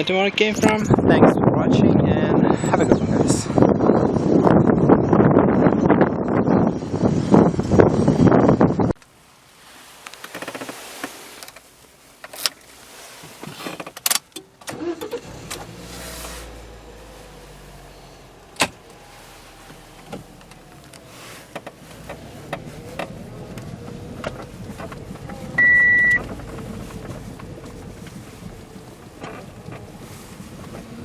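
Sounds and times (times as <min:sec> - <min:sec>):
car clicks and knocks: 0:10.1 - 0:12.6, 0:13.4 - 0:15.7, 0:18.5 - 0:18.9, 0:20.0 - 0:30.0
loud electronic beep: 0:25.6 - 0:26.2.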